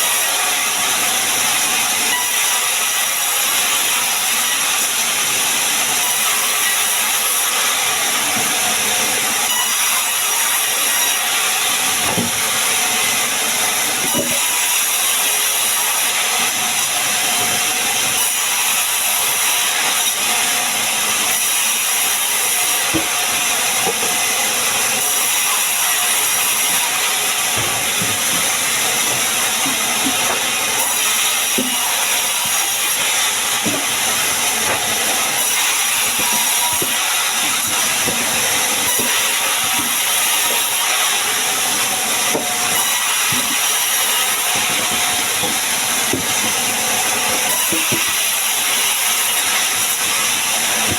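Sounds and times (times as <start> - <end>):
sawmill saw cutting timber: 0.0 - 50.9
small knocks: 12.0 - 12.4, 22.9 - 23.2, 23.8 - 24.2, 27.5 - 30.6, 31.4 - 32.9, 33.6 - 38.3, 43.3 - 43.8, 44.4 - 46.6.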